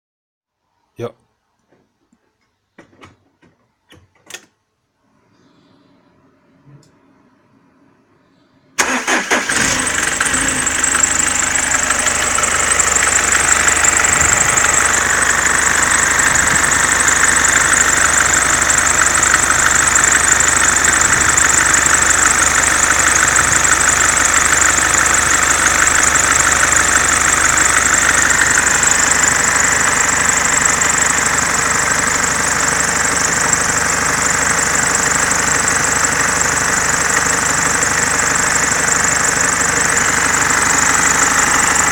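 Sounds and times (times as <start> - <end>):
diesel engine starting and idling: 8.7 - 41.9.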